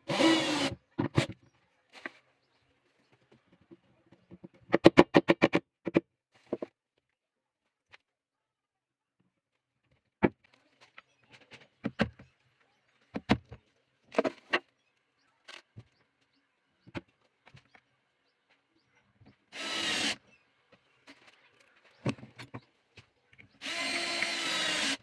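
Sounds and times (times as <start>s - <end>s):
power drill whirring: 0.0s - 0.8s, 19.5s - 20.2s, 23.6s - 25.0s.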